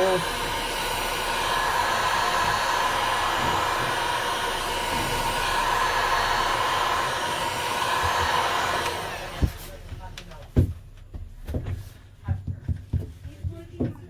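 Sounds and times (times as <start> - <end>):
heat gun blowing with whine: 0.0 - 10.7.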